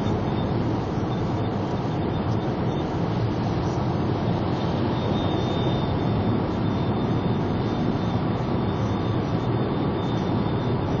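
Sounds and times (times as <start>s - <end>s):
high-pitched whistle: 4.9s - 11.0s.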